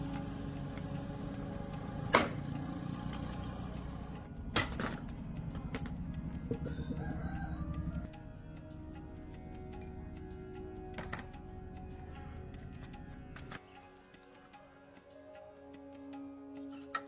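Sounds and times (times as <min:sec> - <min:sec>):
low rumble: 0:02.8 - 0:08.6.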